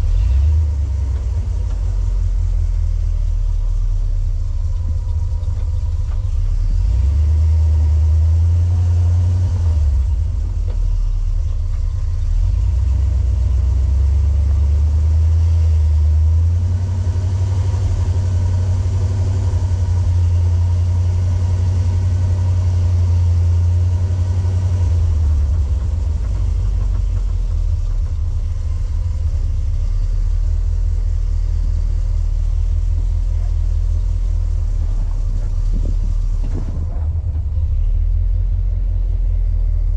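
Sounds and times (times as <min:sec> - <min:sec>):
vehicle engine rumbling: 0:00.0 - 0:39.9.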